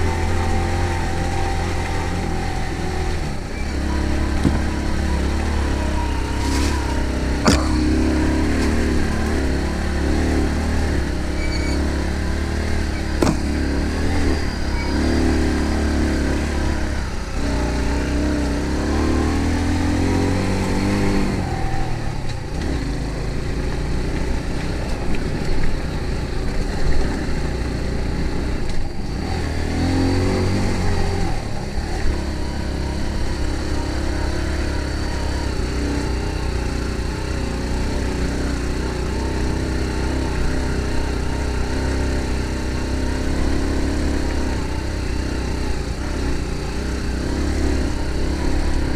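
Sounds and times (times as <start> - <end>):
engine running: 0.0 - 48.9.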